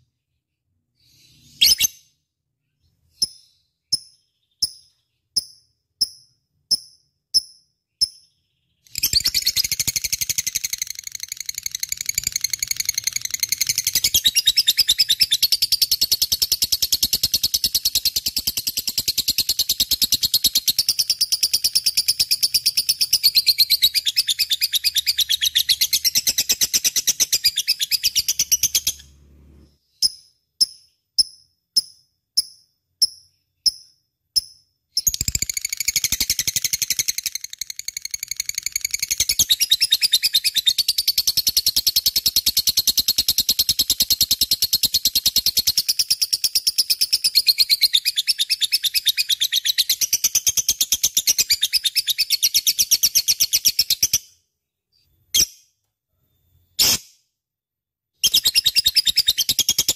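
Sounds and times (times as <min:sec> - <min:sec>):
lovebird chattering: 0:01.3 - 0:02.0.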